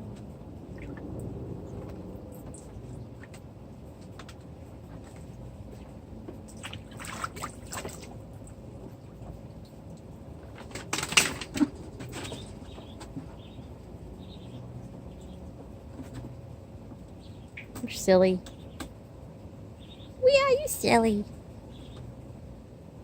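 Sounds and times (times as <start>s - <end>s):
water splashing: 6.5s - 8.2s.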